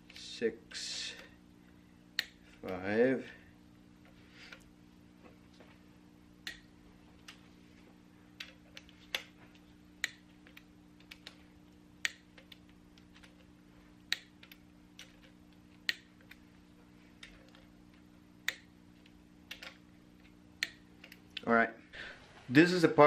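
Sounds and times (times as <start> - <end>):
faint steady hum: 0.0 - 23.0
light ticks: 6.4 - 7.4, 8.4 - 11.4, 12.0 - 13.3, 14.1 - 16.4, 17.2 - 18.7.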